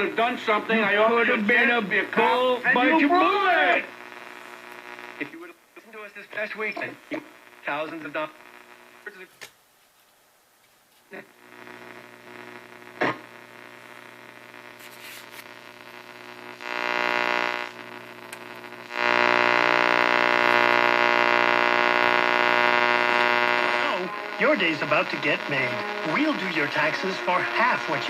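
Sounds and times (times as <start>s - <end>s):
radio static with buzz: 0.0s - 9.4s, 11.1s - 28.0s
sharp radio click: 4.0s - 5.4s, 13.0s - 13.3s.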